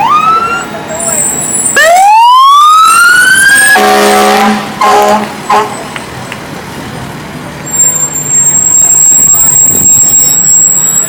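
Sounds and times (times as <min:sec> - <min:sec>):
rising siren wail: 0:00.0 - 0:00.8, 0:01.6 - 0:04.6
fire truck air horn blasts: 0:03.5 - 0:05.9.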